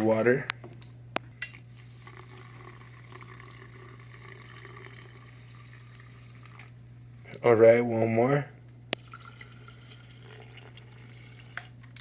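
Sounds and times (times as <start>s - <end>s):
water pouring onto coffee grounds: 1.7s - 6.7s, 9.0s - 11.7s.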